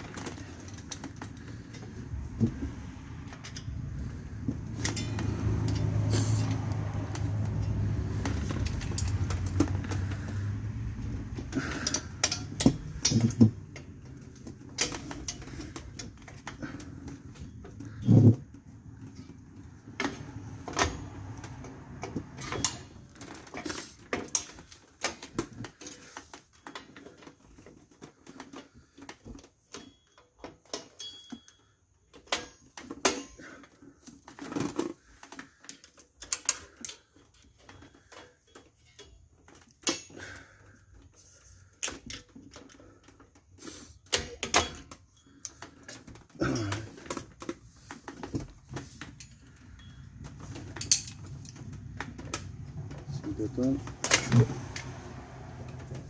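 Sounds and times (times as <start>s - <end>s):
hand tools clicking on metal: 3.3s - 18.0s, 49.0s - 51.6s.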